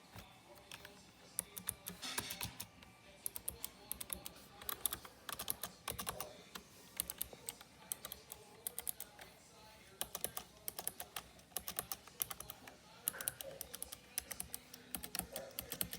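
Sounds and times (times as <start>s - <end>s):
keyboard typing: 0.1s - 9.3s, 10.0s - 15.9s.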